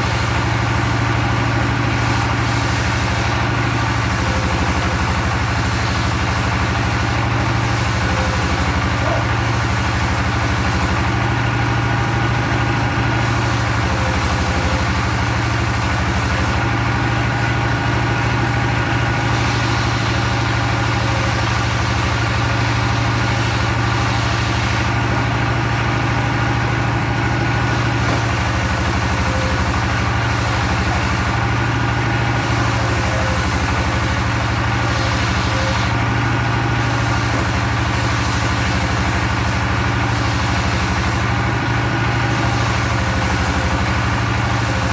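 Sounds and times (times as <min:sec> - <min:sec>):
sawmill engine humming: 0:00.0 - 0:44.9.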